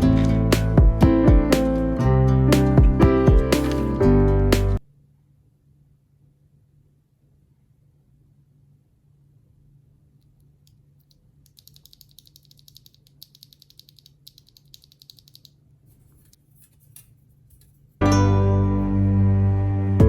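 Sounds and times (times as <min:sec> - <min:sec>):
loud music: 0:00.0 - 0:04.8
mechanical keyboard typing: 0:11.5 - 0:15.5.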